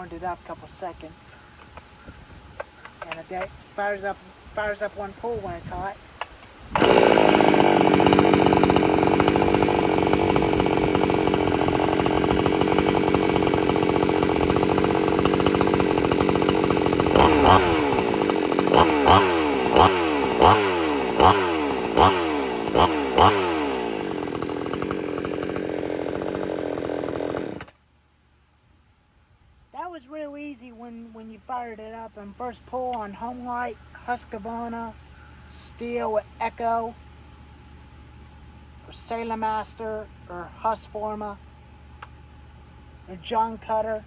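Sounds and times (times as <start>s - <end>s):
chainsaw idling and revving: 6.2s - 27.8s.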